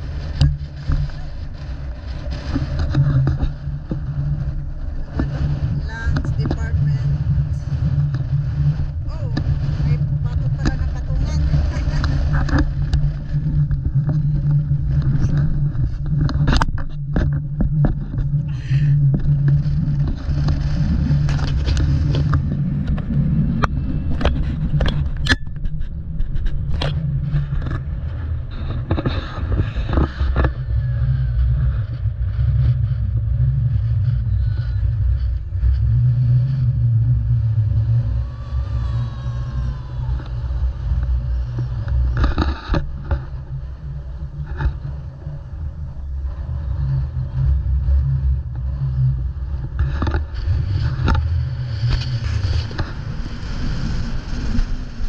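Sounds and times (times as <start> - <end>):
engine low rumble: 0.0 - 55.0
sharp clicks and rattles: 0.1 - 30.6.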